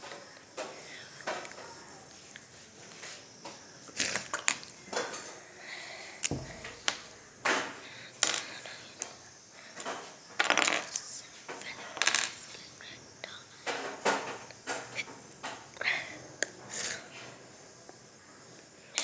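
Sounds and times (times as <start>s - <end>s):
plastic bricks clicking and rattling: 8.2s - 8.6s.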